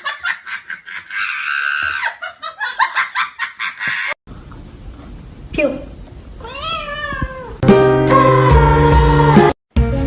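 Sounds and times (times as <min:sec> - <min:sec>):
person laughing hard: 0:00.0 - 0:04.2.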